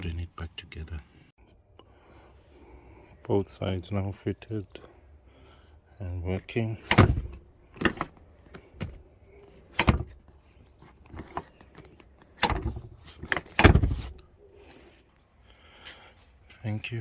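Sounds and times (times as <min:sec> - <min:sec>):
seat backs clunking: 0:06.7 - 0:14.3
seat latches clicking: 0:06.8 - 0:14.3
sharp clicks and knocks: 0:06.9 - 0:09.0, 0:09.7 - 0:14.2.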